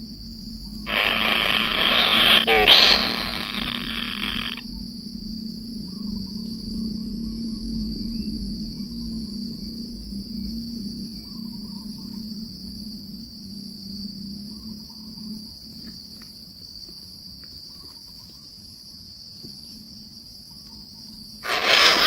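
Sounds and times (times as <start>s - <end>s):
insects chorus: 0.0s - 22.0s.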